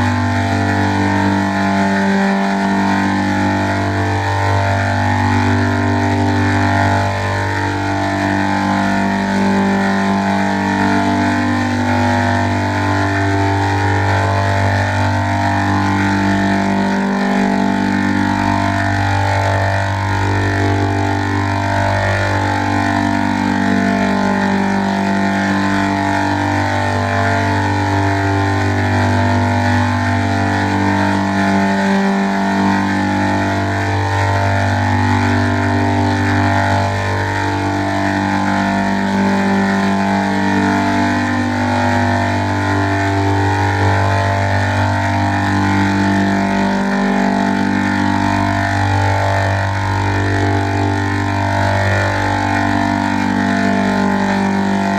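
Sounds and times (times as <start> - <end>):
low bass drone: 0.0 - 54.9.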